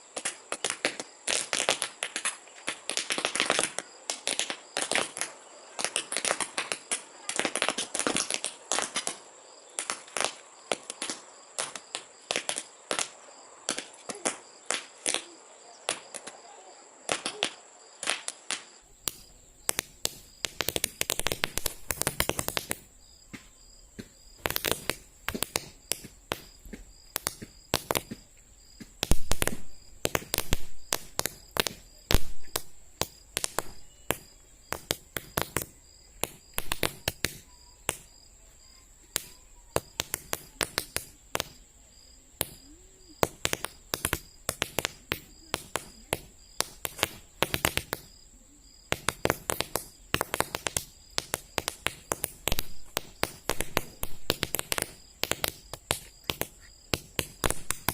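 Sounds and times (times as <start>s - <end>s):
toy cap gun pops: 17.1s - 28.2s, 29.0s - 38.2s, 39.1s - 41.6s, 42.4s - 48.1s, 48.9s - 57.9s.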